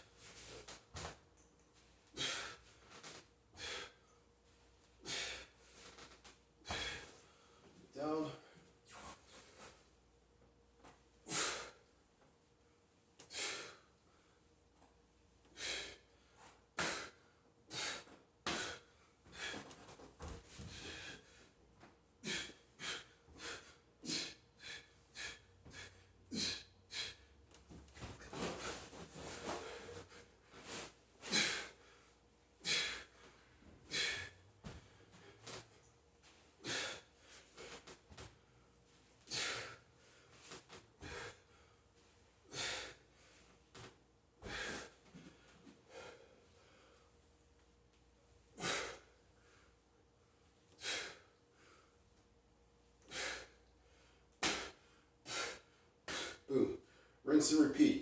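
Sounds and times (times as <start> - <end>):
man breathing heavily: 2.1 - 4.3, 5.0 - 6.0, 6.6 - 9.6, 11.2 - 11.9, 13.2 - 14.5, 15.5 - 21.6, 22.2 - 35.9, 36.5 - 43.5, 44.4 - 47.3, 48.5 - 49.9, 50.7 - 52.0, 53.0 - 57.7.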